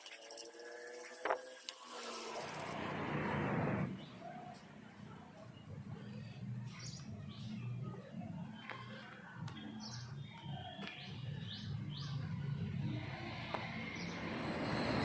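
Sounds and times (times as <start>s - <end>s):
steady low hum: 0.3s - 15.0s
small birds chirping: 3.9s - 15.0s.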